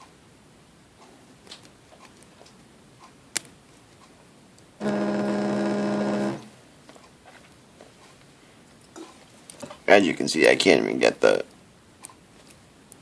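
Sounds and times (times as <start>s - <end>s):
electric buzz with low hum: 4.6s - 6.8s.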